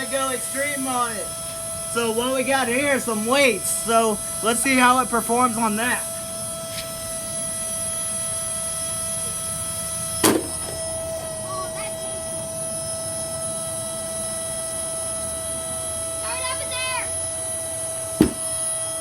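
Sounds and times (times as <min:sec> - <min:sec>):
vacuum cleaner motor whining: 0:00.0 - 0:19.0
sharp knock: 0:18.2 - 0:18.5.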